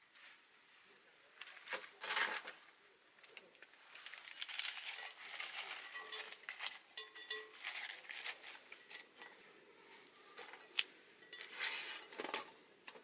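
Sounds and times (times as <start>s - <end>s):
objects clicking and clinking: 4.4s - 9.4s.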